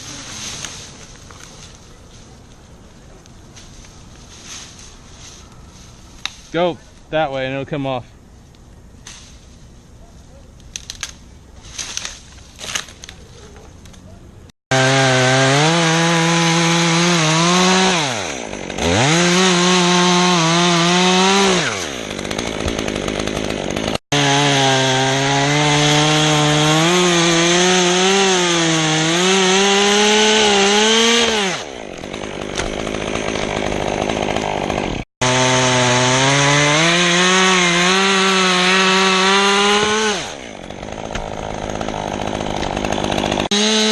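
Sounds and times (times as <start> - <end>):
chainsaw cutting wood: 14.7 - 43.9.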